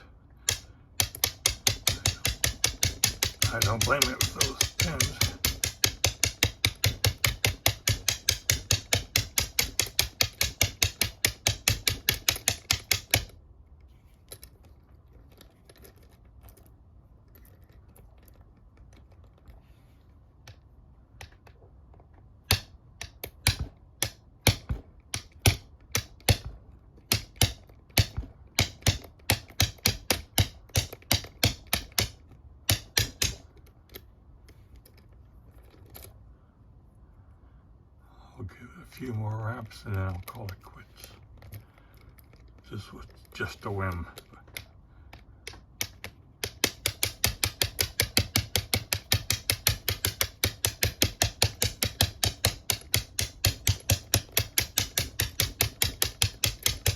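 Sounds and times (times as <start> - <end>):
bump key knocking in padlock: 0.4 - 13.4, 22.4 - 34.1, 39.9 - 56.9.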